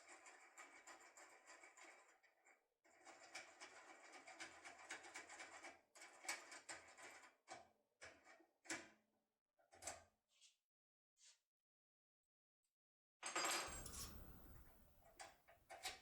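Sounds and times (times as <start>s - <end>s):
lock-pick clicks and scraping: 13.7s - 14.8s.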